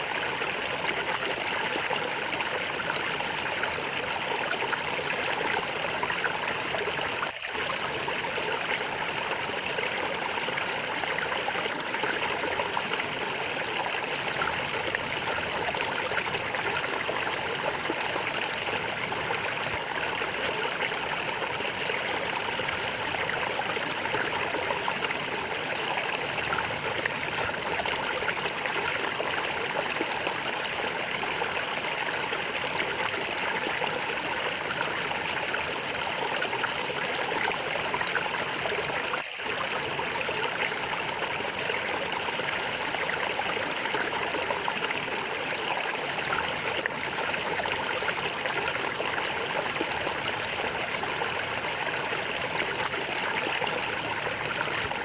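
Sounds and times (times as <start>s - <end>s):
stream water gurgling: 0.0s - 55.0s.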